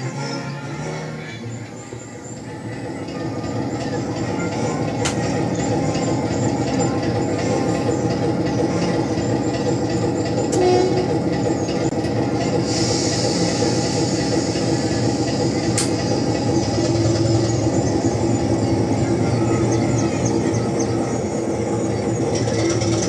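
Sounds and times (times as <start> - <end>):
rail clatter: 0.0 - 23.0
train running rumble: 0.0 - 23.0
hiss: 12.4 - 17.7.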